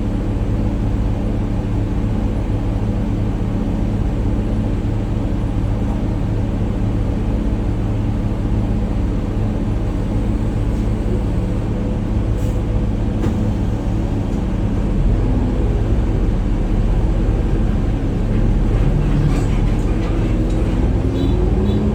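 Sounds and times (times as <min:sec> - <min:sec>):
bus engine droning: 0:00.0 - 0:21.9.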